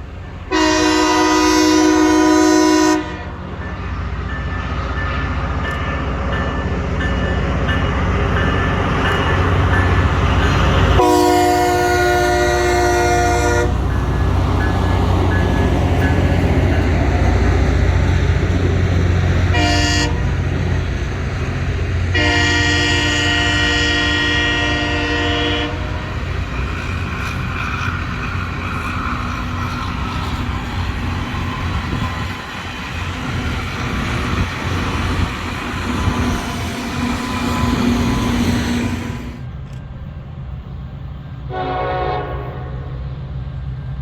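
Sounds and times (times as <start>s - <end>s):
train engines rumbling: 0.0s - 44.0s
train wheels on rails: 0.0s - 44.0s
locomotive horn blasts: 0.5s - 3.4s, 11.0s - 13.9s, 19.5s - 20.3s, 22.1s - 26.2s, 41.5s - 43.0s.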